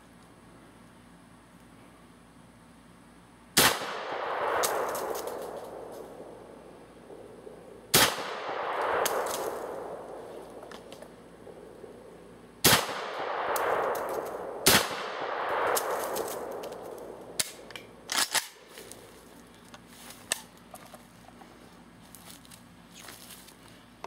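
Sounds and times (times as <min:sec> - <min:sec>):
shotgun shots with echo: 0:03.6 - 0:05.9, 0:07.9 - 0:10.2, 0:12.6 - 0:16.6.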